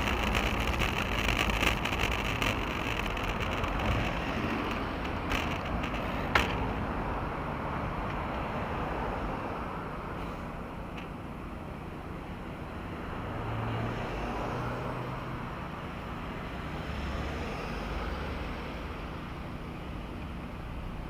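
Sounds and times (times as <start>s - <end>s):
sharp clicks: 0.0s - 6.8s
wind and road noise from bicycle: 0.0s - 21.0s.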